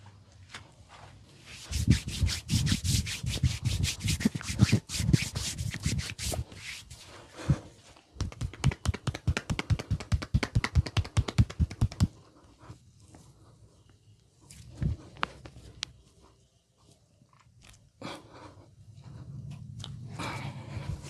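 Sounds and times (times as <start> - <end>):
hands rubbing hair: 1.4 - 7.2, 7.9 - 12.3
rapid pats on head: 1.5 - 7.1, 8.1 - 12.2.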